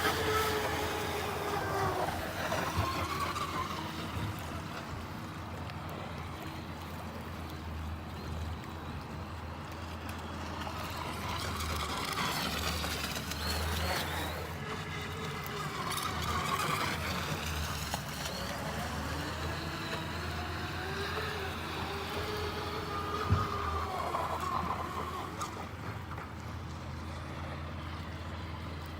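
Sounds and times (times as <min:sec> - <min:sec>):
electric motor whining: 0:00.0 - 0:05.3, 0:10.2 - 0:26.2.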